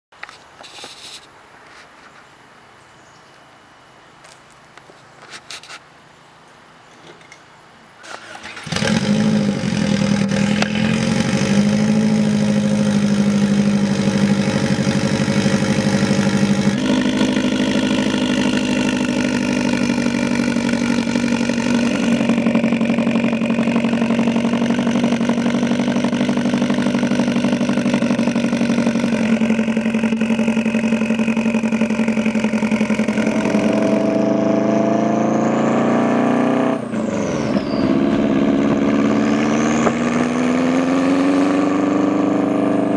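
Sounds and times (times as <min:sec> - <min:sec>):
car engine starting and idling: 0:08.0 - 0:42.9.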